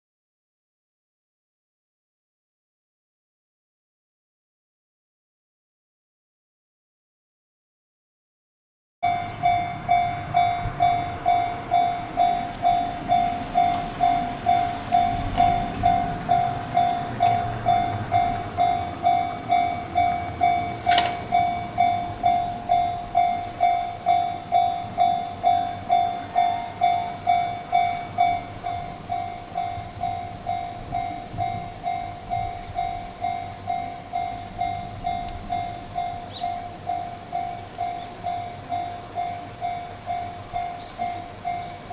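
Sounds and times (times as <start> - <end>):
level-crossing warning bell ringing: 9.0 - 41.9.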